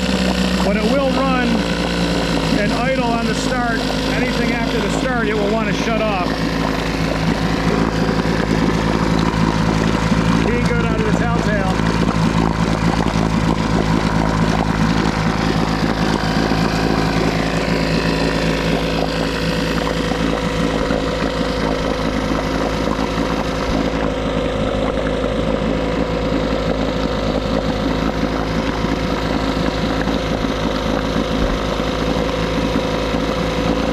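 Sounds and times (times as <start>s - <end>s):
outboard engine idling: 0.0s - 33.9s.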